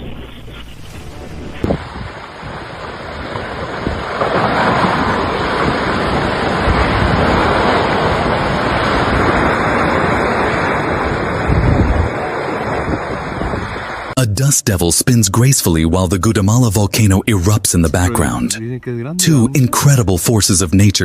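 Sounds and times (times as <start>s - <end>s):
wind buffeting microphone: 0.0s - 14.2s.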